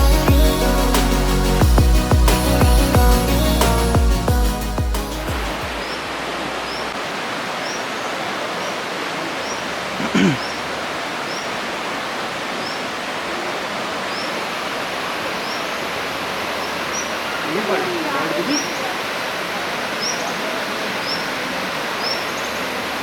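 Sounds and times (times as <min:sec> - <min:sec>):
waterfall rushing: 0:00.0 - 0:23.0.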